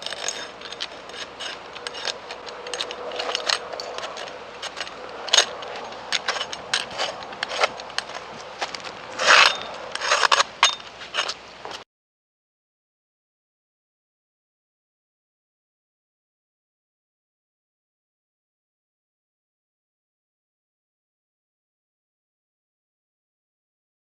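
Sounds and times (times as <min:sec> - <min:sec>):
hand tool scraping bark: 0:00.0 - 0:11.8.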